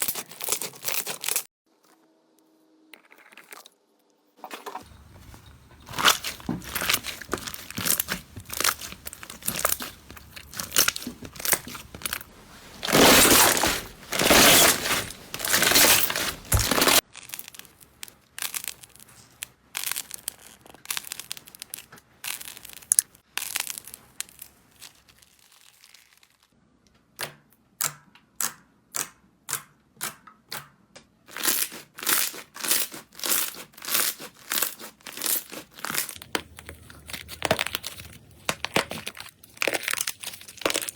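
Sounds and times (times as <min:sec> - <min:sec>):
slime crackling and popping: 0:05.2 - 0:14.7, 0:15.4 - 0:26.5, 0:31.4 - 0:40.9.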